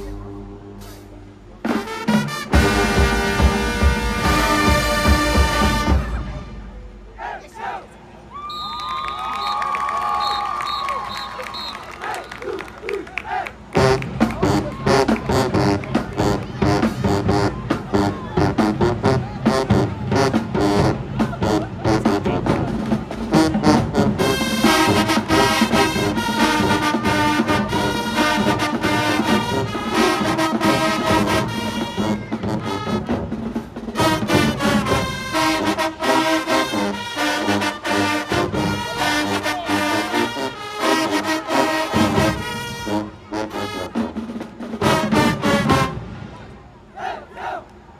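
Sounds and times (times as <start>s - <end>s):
brass playing tune: 0.0s - 6.8s, 13.6s - 46.3s
drumline percussion: 0.9s - 6.8s, 8.7s - 47.6s.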